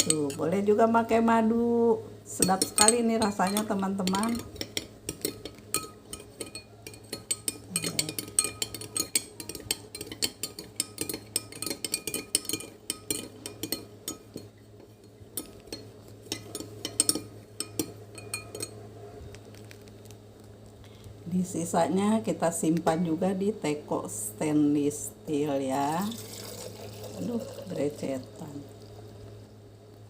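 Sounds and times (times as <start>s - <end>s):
spoon and dishes clinking: 2.4s - 18.8s.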